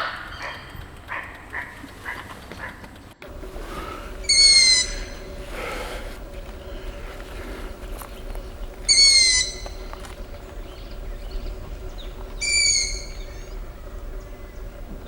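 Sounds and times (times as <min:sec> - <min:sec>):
faint steady hum: 0:00.0 - 0:15.0
bird whistling call: 0:03.3 - 0:15.0.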